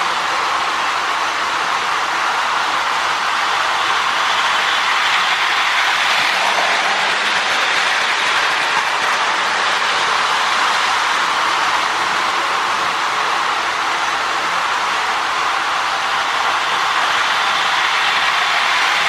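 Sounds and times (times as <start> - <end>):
toy train motor whirring: 3.0 - 12.4, 15.5 - 19.0.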